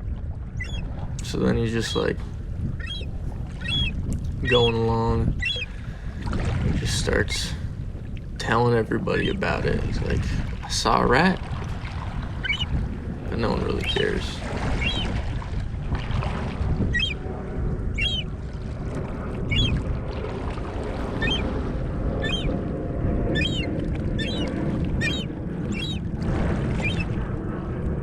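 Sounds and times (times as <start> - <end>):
steady low rumble: 0.0 - 28.0
seagulls calling: 0.6 - 6.2, 8.5 - 9.9, 12.3 - 12.8, 13.4 - 15.2, 16.8 - 18.3, 19.4 - 19.8, 21.0 - 22.6, 23.3 - 27.2.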